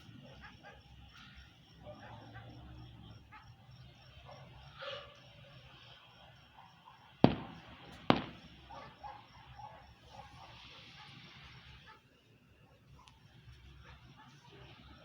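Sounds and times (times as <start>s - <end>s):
firework bangs: 7.2s - 9.3s.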